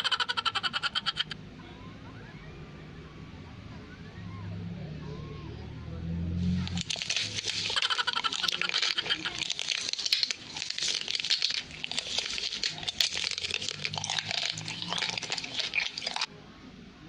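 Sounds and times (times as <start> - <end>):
dense crackling and crinkling: 6.5 - 16.3.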